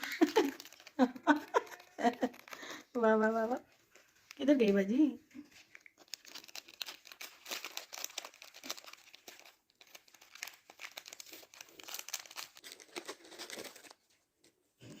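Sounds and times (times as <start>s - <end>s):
parrot chewing something crackly: 5.4s - 14.0s.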